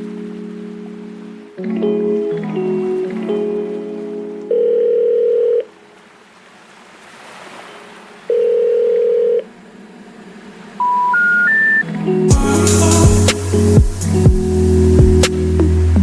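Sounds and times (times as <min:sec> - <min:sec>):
low telephone tone: 0:04.5 - 0:05.8, 0:08.3 - 0:09.5
short rising beeps: 0:10.8 - 0:11.9
faint line hiss: 0:12.3 - 0:16.0.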